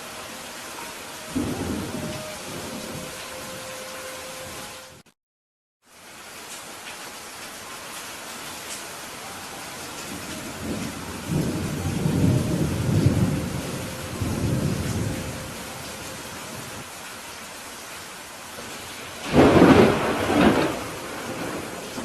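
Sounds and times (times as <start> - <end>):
steady rain: 0.0 - 5.2, 5.8 - 22.0
rolling thunder rumble: 1.3 - 3.6, 9.8 - 16.8, 19.2 - 22.0
sharp thunderclap: 19.2 - 22.0.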